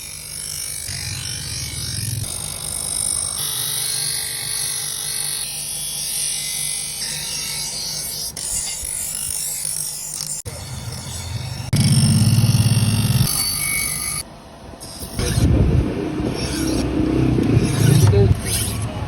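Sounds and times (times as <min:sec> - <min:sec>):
hissing metalworking tools: 0:16.2 - 0:19.0.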